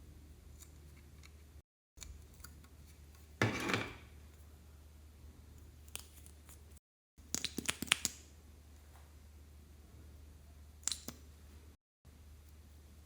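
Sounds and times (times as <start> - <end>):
slime clicking and popping: 7.2 - 8.2.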